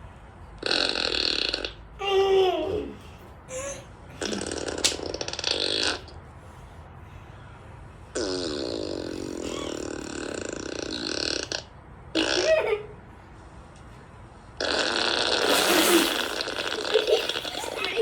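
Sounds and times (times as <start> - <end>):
comic burp sound effects: 4.2 - 6.0, 14.6 - 18.0.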